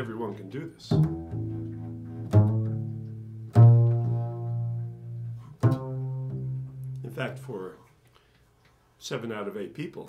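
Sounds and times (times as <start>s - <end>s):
low plucked string notes: 0.8s - 7.6s.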